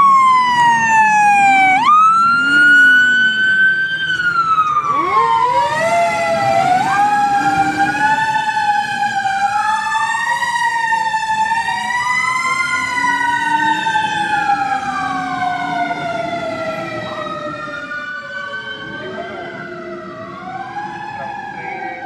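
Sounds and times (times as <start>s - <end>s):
siren winding up: 0.0s - 8.6s
fire engine siren wailing: 0.0s - 22.0s
truck engine rumble: 0.0s - 22.0s.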